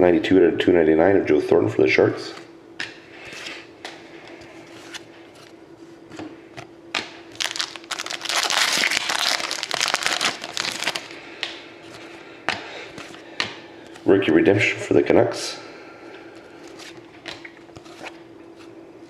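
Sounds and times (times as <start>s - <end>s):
foil wrapper crinkling and tearing: 7.3s - 11.2s.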